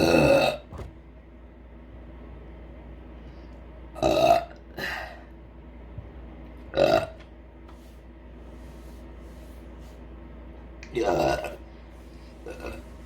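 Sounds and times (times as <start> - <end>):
woman burping: 0.0 - 0.6, 4.0 - 4.9, 10.9 - 11.6.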